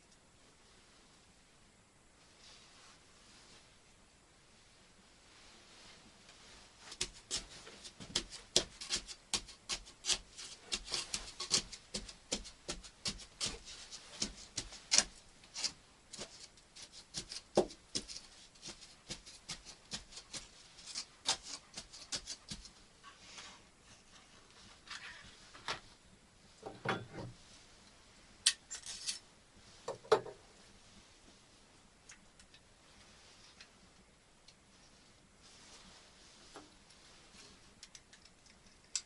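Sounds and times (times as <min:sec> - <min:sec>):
scraping strokes: 0:05.3 - 0:25.6.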